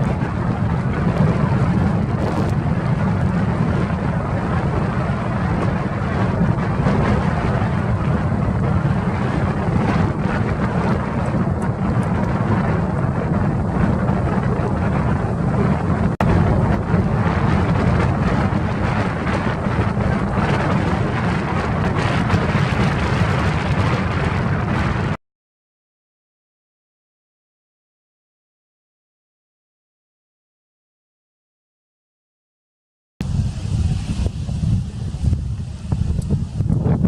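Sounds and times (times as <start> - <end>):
wind buffeting microphone: 0.0 - 25.2, 33.2 - 37.0.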